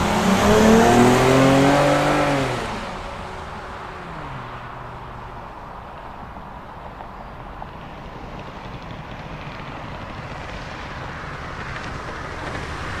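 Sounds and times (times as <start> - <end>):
car engine rumble: 0.0 - 13.0
road noise: 0.0 - 13.0.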